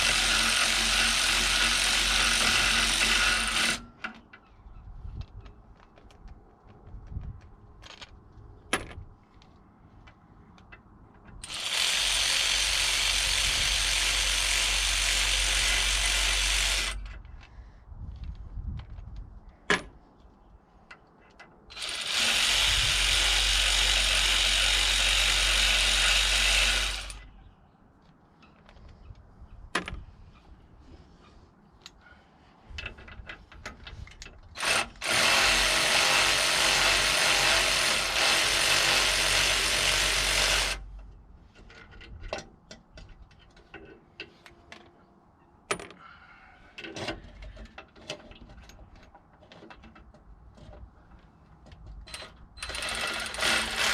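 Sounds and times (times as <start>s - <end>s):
electric ratchet running: 11.4s - 17.0s, 21.7s - 27.2s, 52.6s - 53.9s
tool handling clicks and knocks: 32.7s - 34.5s, 41.0s - 45.0s, 46.8s - 52.8s.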